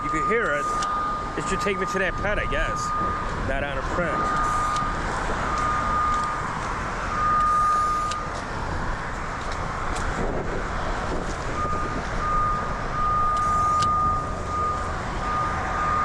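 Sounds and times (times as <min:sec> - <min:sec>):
high beep tone: 0:00.0 - 0:06.4, 0:07.1 - 0:08.3, 0:11.6 - 0:16.0.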